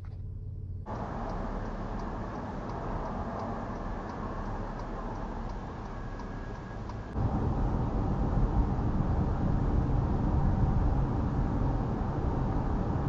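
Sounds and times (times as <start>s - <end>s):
car road noise: 0.0s - 13.0s
turn signal ticking: 0.2s - 7.2s.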